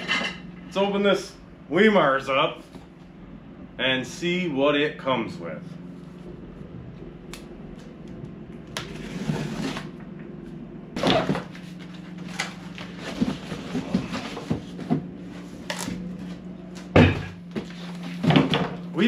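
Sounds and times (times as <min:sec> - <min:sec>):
steady low hum: 0:00.0 - 0:19.0
cardboard flaps rustling and scraping: 0:08.8 - 0:10.0, 0:11.0 - 0:18.8.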